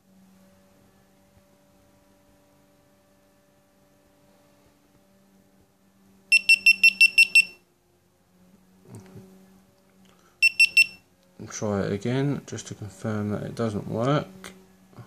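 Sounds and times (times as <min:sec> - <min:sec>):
camera beeping: 0:06.3 - 0:07.6, 0:10.4 - 0:11.0.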